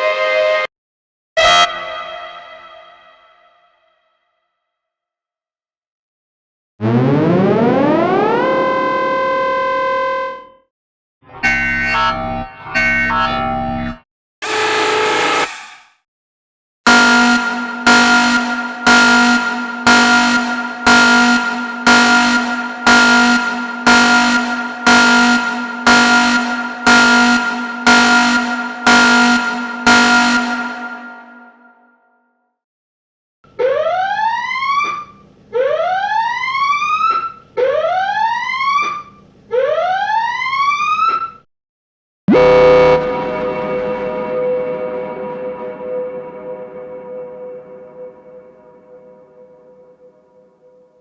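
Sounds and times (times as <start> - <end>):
whoop alarm siren: 7.0 - 10.1, 16.9 - 31.6, 33.6 - 35.0, 35.6 - 38.9, 39.6 - 41.2
alarm horn blasts: 14.4 - 15.7, 16.9 - 31.8, 42.3 - 49.5
loud ringing hit: 16.9 - 31.7.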